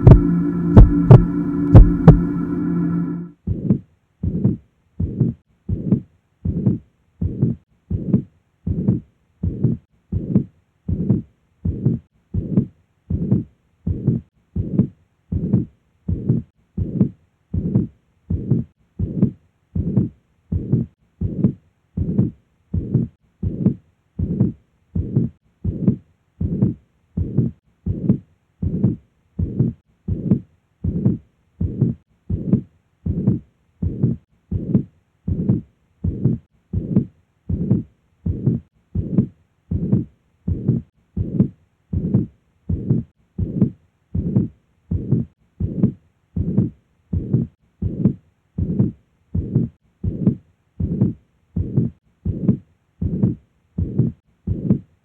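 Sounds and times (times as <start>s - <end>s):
heartbeat rubbing sounds: 0.0s - 3.3s, 25.0s - 54.8s.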